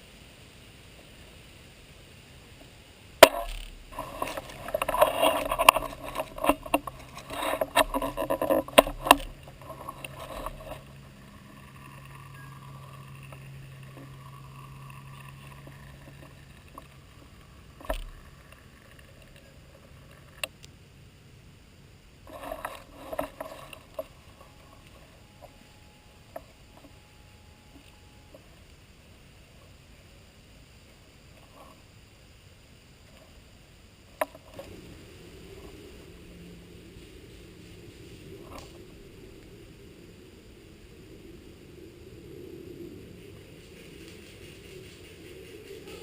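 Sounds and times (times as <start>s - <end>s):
faint steady hum: 0.0s - 46.0s
rustling and clicking handling noise: 2.6s - 20.7s, 22.3s - 28.8s.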